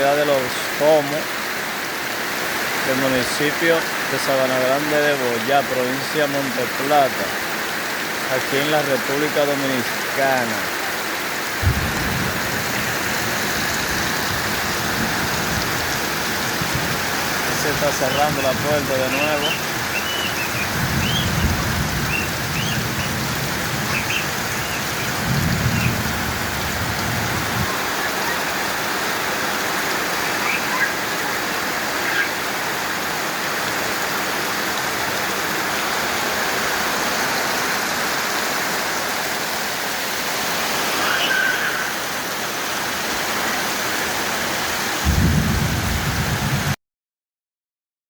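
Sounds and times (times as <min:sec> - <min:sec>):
heavy rain pouring: 0:00.0 - 0:46.8
low rumbles: 0:11.6 - 0:18.9.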